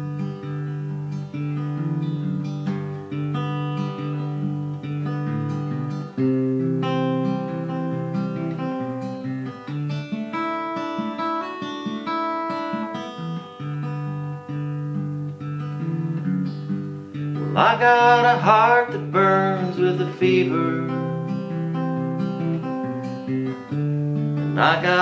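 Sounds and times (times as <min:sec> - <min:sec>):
acoustic guitar strumming: 0:00.0 - 0:25.0.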